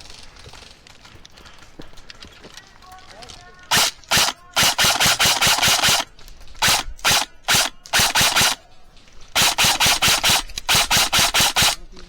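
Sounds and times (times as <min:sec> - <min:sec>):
airsoft rifle shots: 0:03.6 - 0:12.0.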